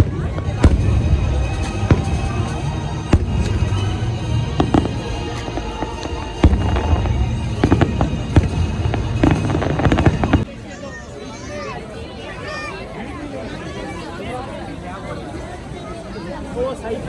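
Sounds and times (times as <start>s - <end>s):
fireworks bangs and crackles: 0.0s - 10.4s
low rumble: 0.0s - 10.4s
music playing: 0.0s - 10.4s.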